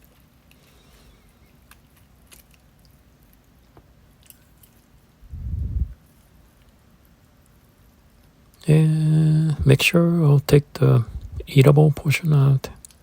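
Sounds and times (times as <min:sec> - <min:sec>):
soft squishing of meat: 0:00.0 - 0:05.3, 0:05.9 - 0:08.6.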